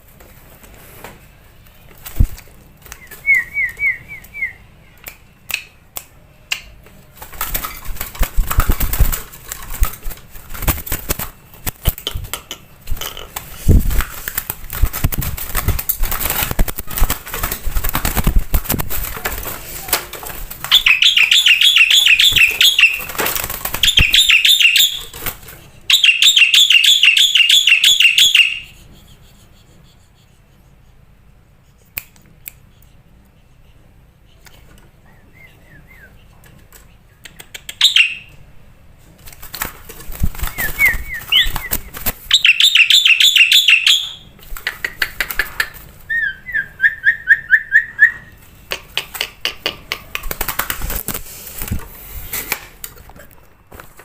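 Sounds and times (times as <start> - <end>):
bird wings flapping: 7.1 - 12.1, 13.4 - 21.3, 22.2 - 25.6, 39.2 - 42.4, 50.1 - 52.6
bird whistling calls: 20.7 - 23.1, 23.8 - 25.0, 25.9 - 28.7, 37.8 - 38.3, 40.5 - 44.2.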